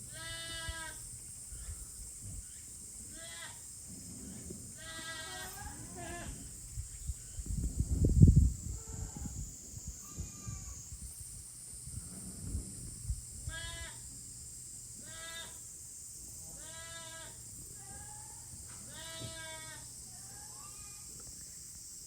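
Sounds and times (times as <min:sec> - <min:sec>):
steady high hiss: 0:00.0 - 0:22.0
young goats bleating: 0:00.1 - 0:01.0, 0:03.1 - 0:03.6, 0:04.8 - 0:06.5, 0:10.0 - 0:10.8, 0:13.5 - 0:14.0, 0:15.0 - 0:15.6, 0:16.5 - 0:21.2.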